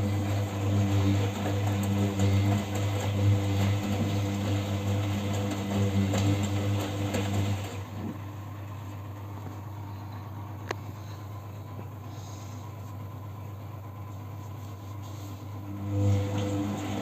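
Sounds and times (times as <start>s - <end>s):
washing machine drum turning: 0.0s - 8.3s, 15.8s - 17.0s.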